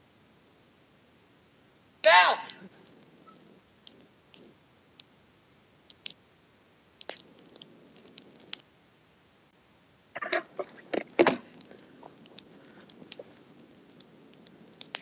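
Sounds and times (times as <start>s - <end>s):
neck joints cracking: 2.4s - 4.6s, 5.9s - 6.2s, 7.0s - 8.6s, 10.2s - 15.0s.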